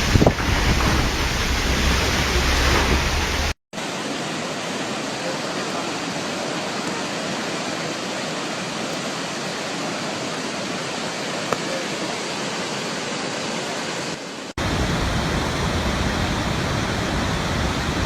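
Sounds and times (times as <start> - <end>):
wind rumble on microphone: 0.0 - 3.5
waterfall rushing: 0.0 - 18.0.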